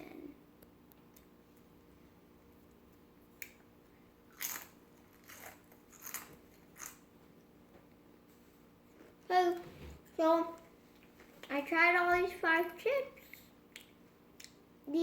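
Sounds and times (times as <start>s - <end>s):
potato chips crunching: 4.3s - 7.0s.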